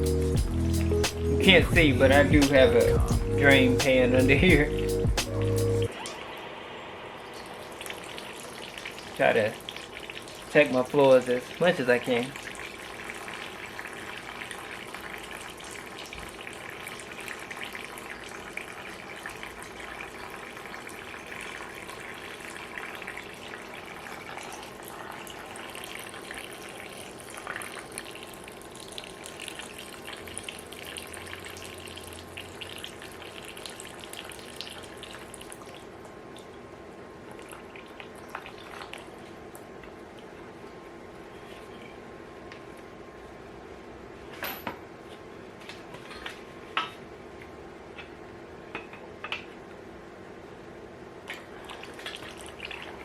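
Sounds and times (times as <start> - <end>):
coolant trickling into pan: 5.9 - 41.8, 51.2 - 53.0.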